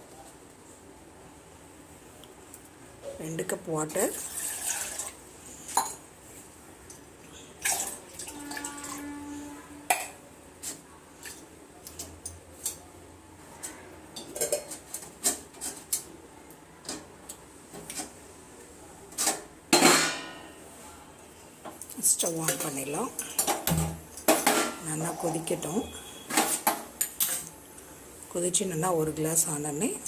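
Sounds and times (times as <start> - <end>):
pots and utensils clinking: 14.1 - 16.1, 19.1 - 20.6, 22.2 - 27.5.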